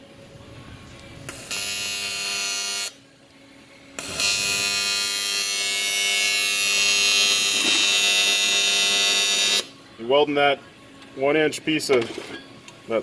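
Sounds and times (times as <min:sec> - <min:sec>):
welding arc buzzing: 0:00.8 - 0:03.0, 0:04.0 - 0:09.8.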